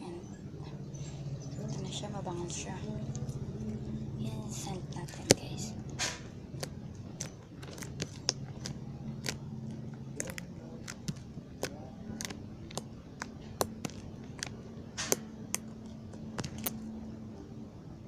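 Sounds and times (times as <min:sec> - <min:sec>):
steady low hum: 0:00.0 - 0:18.0
slime squeezed sticky clicks: 0:05.1 - 0:16.8.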